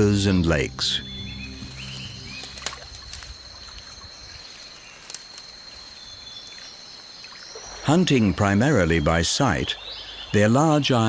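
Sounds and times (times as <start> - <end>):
low held music tone: 0.0 - 4.6
high-pitched insect drone: 0.0 - 9.5.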